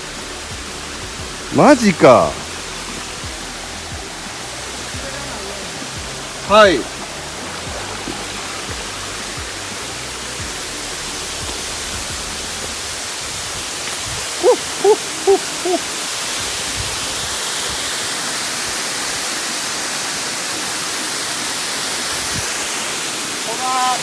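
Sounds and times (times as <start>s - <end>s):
rushing stream and waterfall: 0.0s - 24.0s
short hooting calls: 14.4s - 16.0s.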